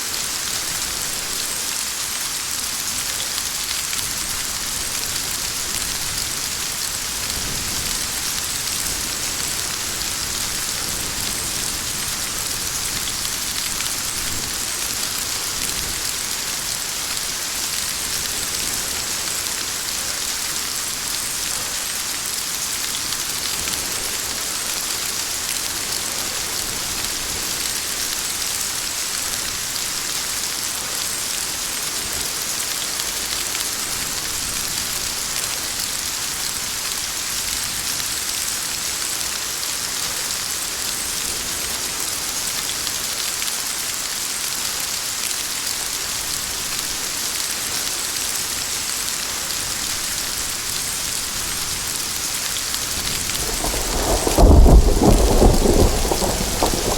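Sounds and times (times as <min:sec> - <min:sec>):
heavy rain pouring: 0:00.0 - 0:56.9.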